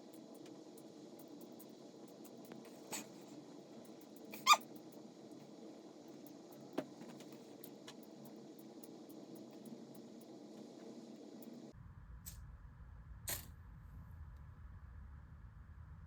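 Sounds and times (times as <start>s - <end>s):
faint steady hum: 0.0s - 16.0s
short squeaks falling in pitch: 4.4s - 4.6s.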